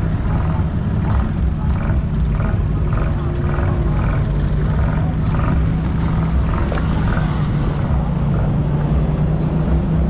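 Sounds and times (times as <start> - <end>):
atv engine humming: 0.0 - 10.0.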